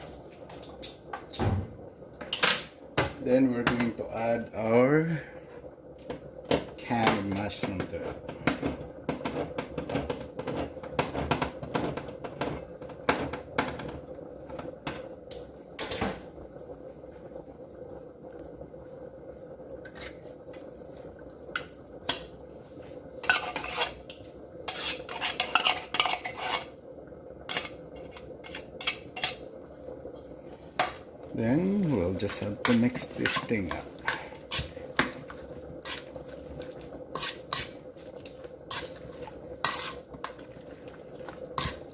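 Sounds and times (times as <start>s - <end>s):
faint steady hum: 0.0s - 41.9s
metal spoon scraping a can: 23.2s - 24.0s, 24.7s - 26.7s, 32.6s - 35.0s, 37.1s - 40.4s, 41.6s - 41.9s.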